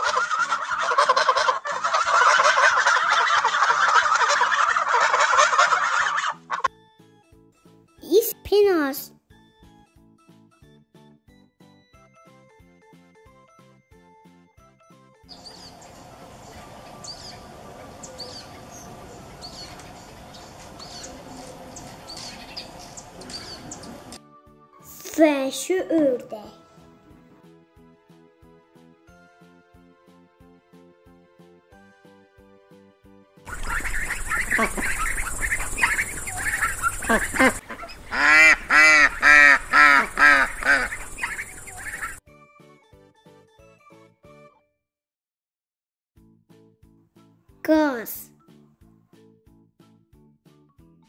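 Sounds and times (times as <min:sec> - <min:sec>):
ducks chattering: 0:00.0 - 0:06.7, 0:15.4 - 0:24.2, 0:33.5 - 0:42.2
loud duck quacks: 0:00.0 - 0:06.7, 0:33.5 - 0:42.2
chaffinch chirping: 0:15.3 - 0:24.2, 0:33.5 - 0:42.2
outdoor background noise: 0:15.3 - 0:24.2, 0:33.5 - 0:42.2.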